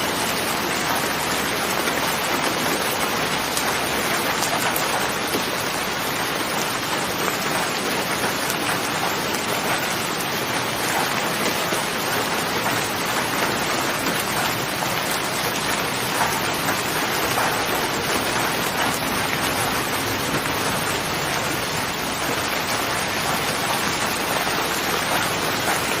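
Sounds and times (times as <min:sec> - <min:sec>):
heavy rain falling: 0:00.0 - 0:26.0.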